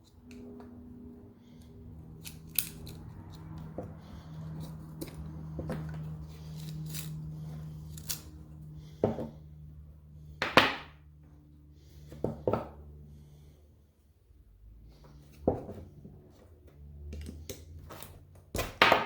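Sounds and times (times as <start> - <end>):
steady low hum: 0.0 - 18.5
hand tools clicking and knocking: 1.6 - 8.3.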